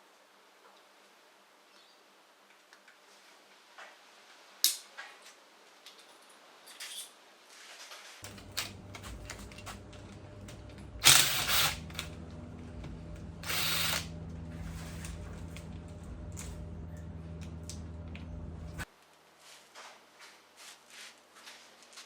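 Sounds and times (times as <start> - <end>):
steady low hum: 8.2 - 18.9
cordless drill running: 8.3 - 17.6.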